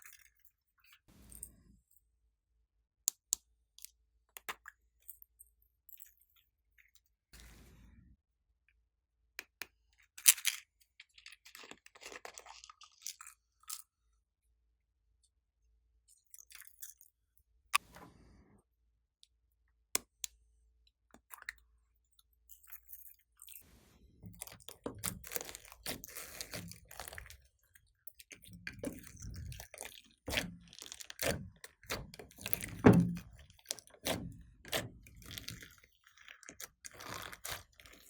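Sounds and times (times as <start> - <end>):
slime clicking and squelching: 24.2 - 38.0.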